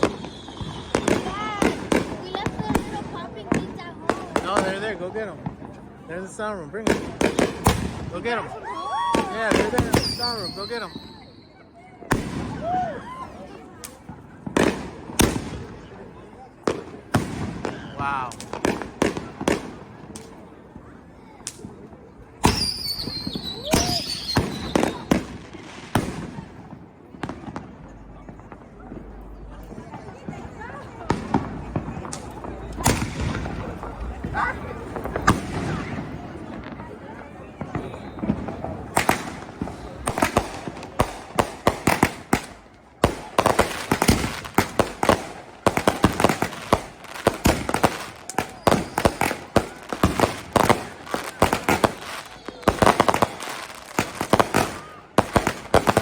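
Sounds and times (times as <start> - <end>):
high firework whistle: 0.0 - 1.7, 8.8 - 11.7, 22.4 - 25.3, 48.4 - 49.4, 51.3 - 53.6
firework bangs: 0.0 - 56.0.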